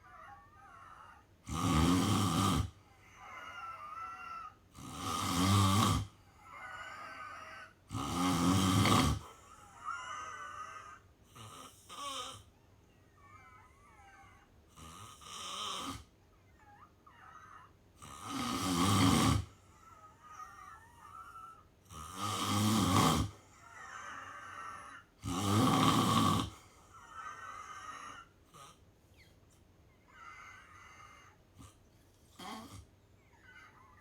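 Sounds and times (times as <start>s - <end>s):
person snoring: 0.0s - 12.4s, 18.0s - 28.8s, 32.4s - 32.8s
quiet breathing: 22.8s - 34.0s.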